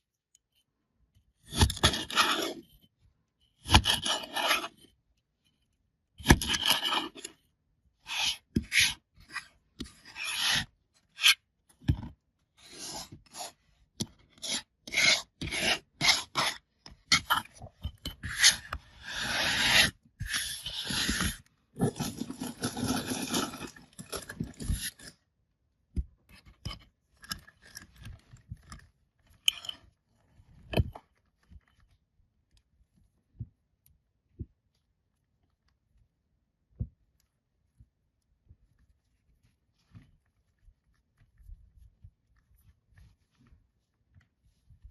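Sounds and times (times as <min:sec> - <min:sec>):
sand packaging scraping: 0:18.3 - 0:25.1.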